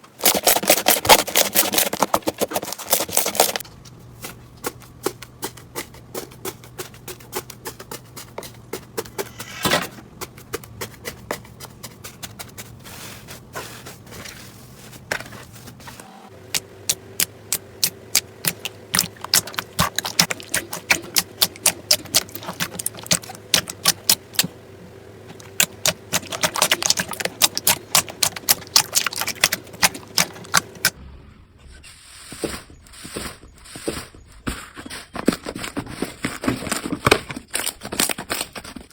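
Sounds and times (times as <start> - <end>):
slime clicking and popping: 16.9 - 24.5, 25.4 - 30.9.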